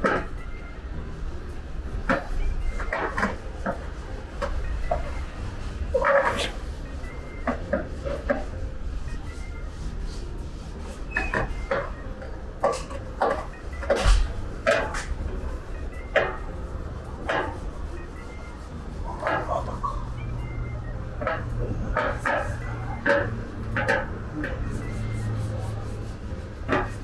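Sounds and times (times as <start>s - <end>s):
knocks and clanks: 0.0s - 5.3s, 10.8s - 18.3s, 19.1s - 25.4s, 26.4s - 27.0s.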